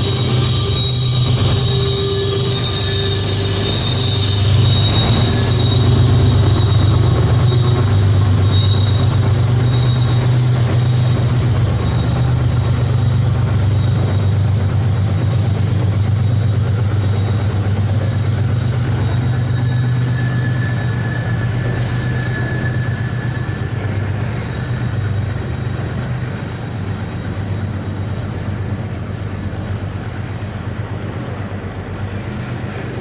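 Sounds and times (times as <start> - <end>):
high wheel squeal: 0.0 - 33.0
locomotive engine drone: 0.0 - 33.0.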